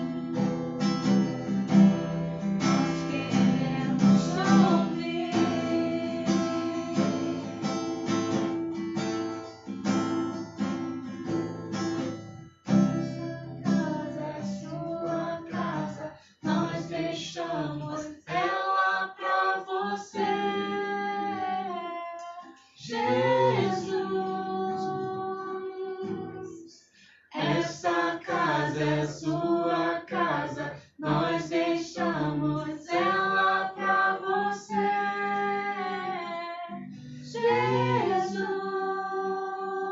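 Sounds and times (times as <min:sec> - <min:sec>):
acoustic guitar strumming: 0:00.0 - 0:18.5, 0:20.2 - 0:26.6, 0:27.4 - 0:34.0, 0:35.2 - 0:38.4
woman singing worship song: 0:02.6 - 0:07.7, 0:13.2 - 0:39.9.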